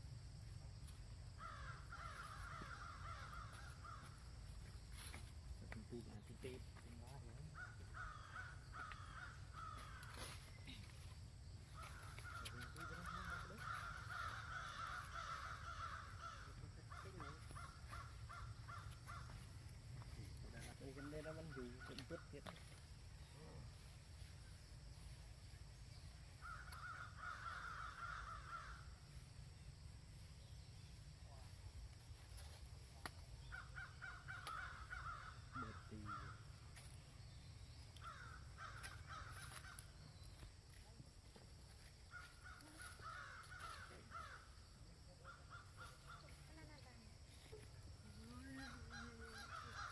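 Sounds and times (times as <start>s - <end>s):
animal calls: 7.4s - 23.8s, 33.4s - 36.8s, 42.0s - 49.9s.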